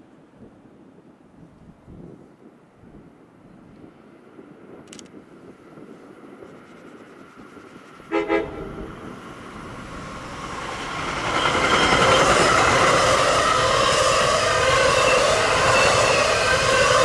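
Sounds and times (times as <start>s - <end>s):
train passing: 5.6s - 17.0s
train horn toot: 8.1s - 9.2s.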